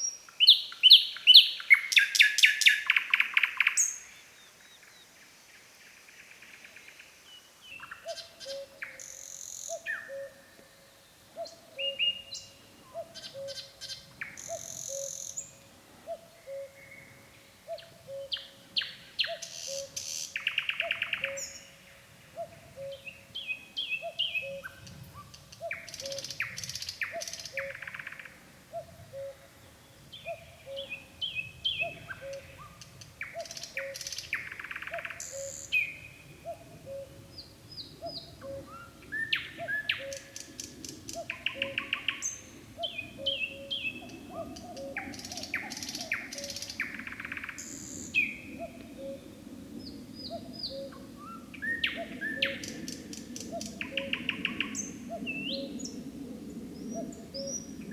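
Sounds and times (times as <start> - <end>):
nightingale singing: 0.0 - 5.0, 7.3 - 10.6, 11.3 - 29.4, 30.1 - 49.2, 50.2 - 51.0.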